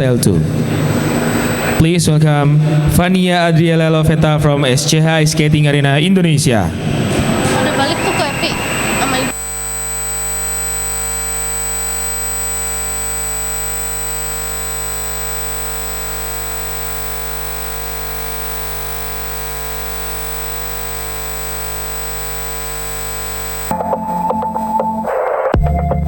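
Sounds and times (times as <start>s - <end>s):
electrical hum and buzz: 0.0s - 3.0s, 6.7s - 23.8s.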